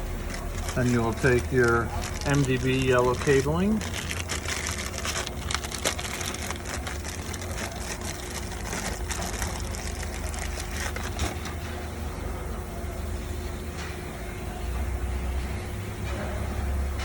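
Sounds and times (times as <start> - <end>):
steady low hum: 0.0 - 17.0
plastic parts clicking and rustling: 0.2 - 11.6.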